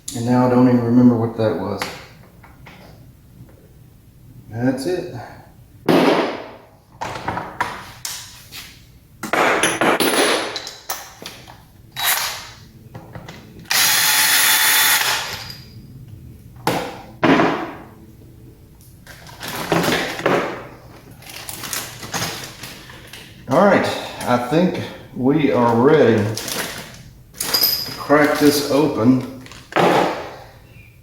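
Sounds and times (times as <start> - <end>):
tools and parts clattering: 9.2 - 12.4, 15.0 - 15.8, 19.1 - 23.4, 26.2 - 30.4
power driver running: 13.6 - 15.4.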